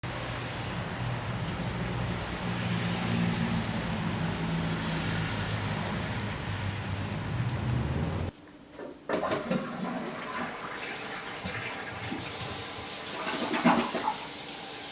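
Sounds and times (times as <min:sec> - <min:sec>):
steady rain: 0:00.0 - 0:08.4.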